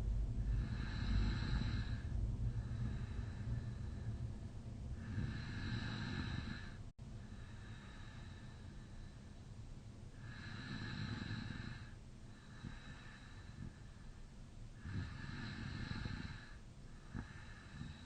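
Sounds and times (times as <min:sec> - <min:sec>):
quiet breathing: 0:00.0 - 0:18.0
man snoring: 0:00.5 - 0:03.3, 0:05.0 - 0:06.8, 0:10.2 - 0:12.0, 0:14.8 - 0:18.0.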